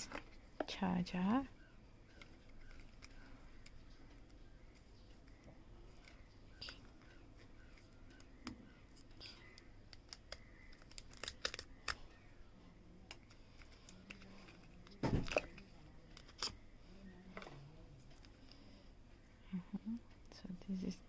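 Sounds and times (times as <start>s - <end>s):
packaging clicks and crinkles: 2.1s - 12.3s
packaging rustle: 10.0s - 12.0s.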